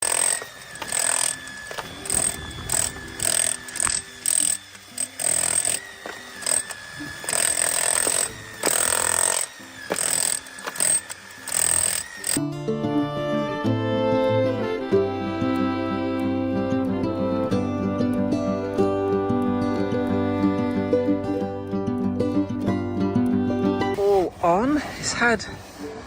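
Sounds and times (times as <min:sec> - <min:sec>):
power tool running in bursts: 0:00.0 - 0:12.4.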